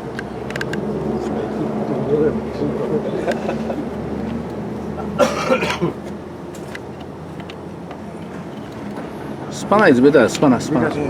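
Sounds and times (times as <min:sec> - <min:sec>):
person coughing: 0:05.0 - 0:06.0.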